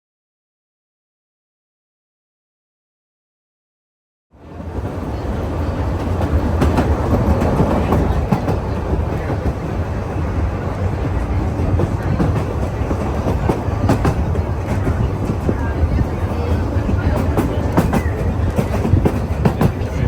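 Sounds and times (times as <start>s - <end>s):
train rumbling on track: 4.4s - 20.0s
wheels clicking over rails: 4.6s - 20.0s.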